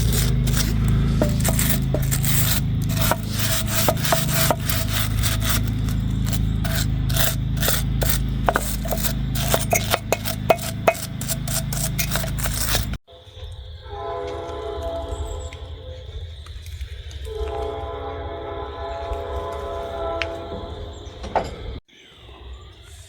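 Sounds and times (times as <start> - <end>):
scraping and rubbing strokes: 0.0 - 13.0
steady low hum: 0.0 - 13.0.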